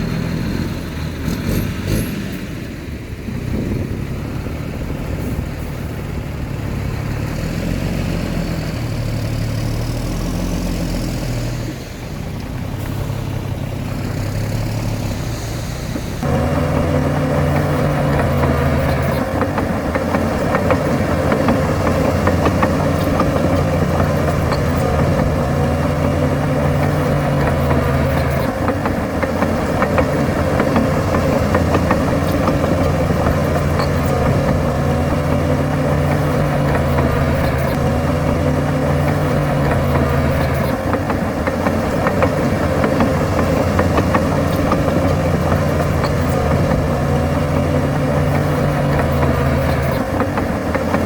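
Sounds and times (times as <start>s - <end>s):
diesel engine running under load: 0.0s - 51.0s
rattling clatter of small knocks: 16.2s - 37.9s, 38.6s - 51.0s.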